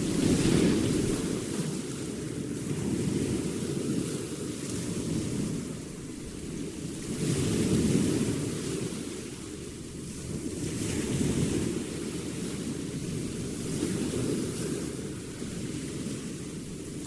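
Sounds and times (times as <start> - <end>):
sea waves breaking on beach: 0.0 - 6.2.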